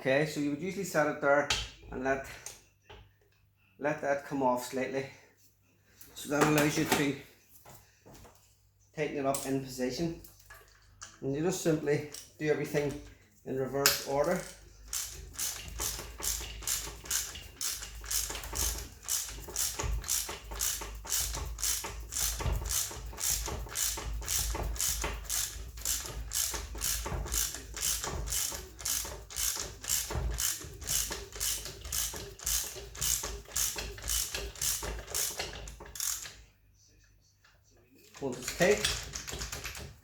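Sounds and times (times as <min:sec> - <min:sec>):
ratchet wrench clicking: 0:13.8 - 0:36.4.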